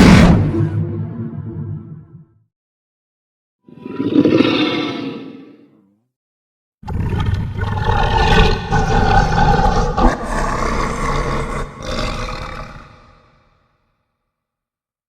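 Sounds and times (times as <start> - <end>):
dinosaur roar: 6.8 - 13.6.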